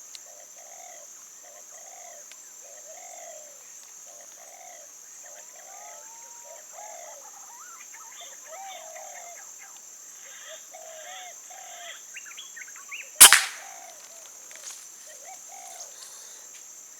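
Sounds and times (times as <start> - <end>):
air rifle firing: 13.2 - 13.7
birds calling: 13.2 - 13.7.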